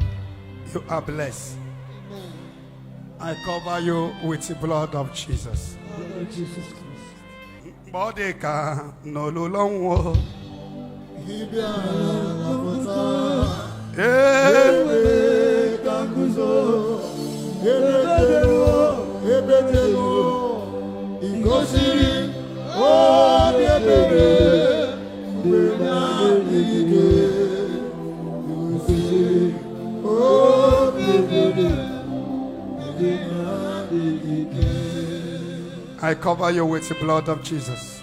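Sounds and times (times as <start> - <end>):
musical backing: 0.0 - 38.0
person singing with vibrato: 11.1 - 36.0.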